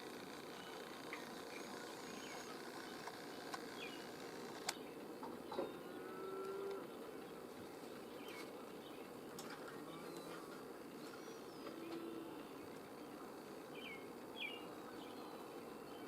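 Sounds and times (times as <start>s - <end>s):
faint outdoor hiss: 0.0s - 16.0s
sharp clicks: 4.4s - 4.8s.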